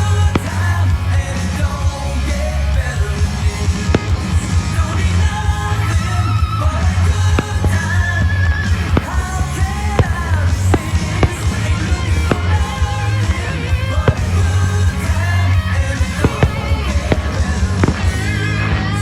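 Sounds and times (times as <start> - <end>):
rock music with singing: 0.0 - 19.0.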